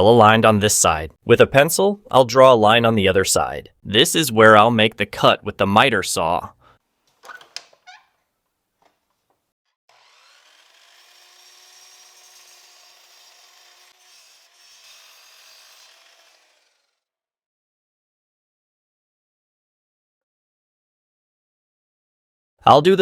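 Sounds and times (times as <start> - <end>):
miter saw cutting wood: 9.9 - 17.1.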